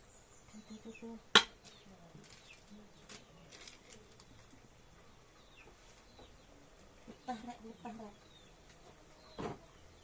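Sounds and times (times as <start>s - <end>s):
sharp knock: 1.4s - 1.6s.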